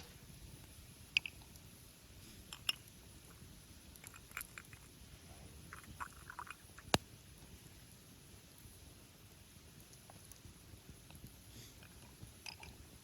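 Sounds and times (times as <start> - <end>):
campfire crackling: 0.0 - 13.0.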